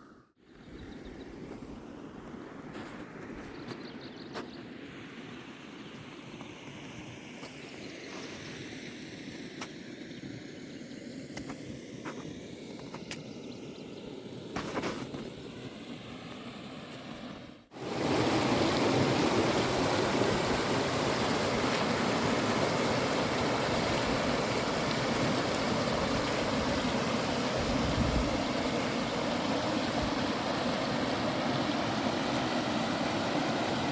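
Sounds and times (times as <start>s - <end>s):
river rushing: 17.7s - 33.9s.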